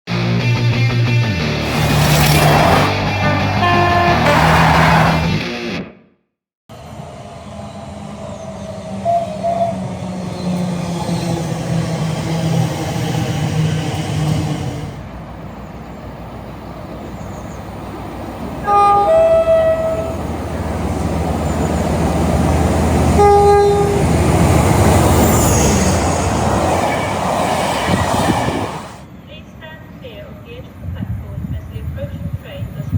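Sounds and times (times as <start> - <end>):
train drone: 1.5 - 5.4, 6.7 - 31.5
train passing at speed: 1.6 - 5.4, 6.7 - 31.5
train horn: 3.2 - 5.2, 8.9 - 10.5, 18.6 - 20.3, 23.1 - 24.2.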